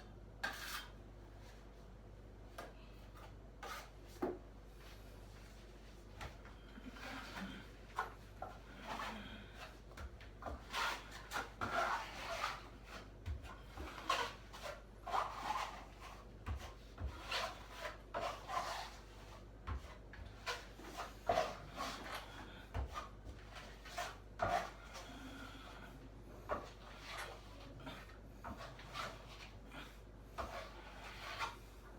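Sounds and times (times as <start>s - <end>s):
hand tool scraping ceiling: 6.8s - 31.9s.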